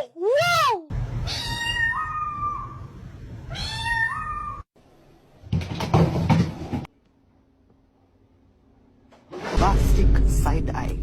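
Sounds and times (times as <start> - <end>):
cat meowing: 1.2 - 2.9, 3.5 - 4.7.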